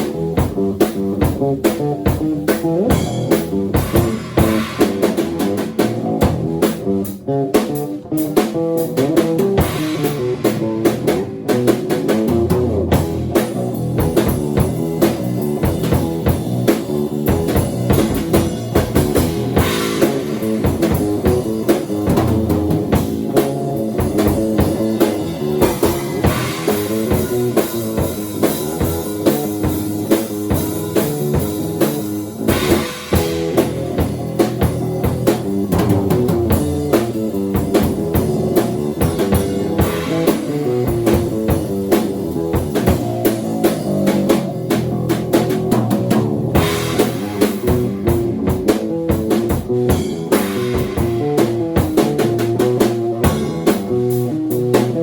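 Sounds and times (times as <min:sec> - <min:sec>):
bass guitar: 0:00.0 - 0:55.0
drum kit playing: 0:00.0 - 0:55.0
cymbals: 0:02.9 - 0:06.1.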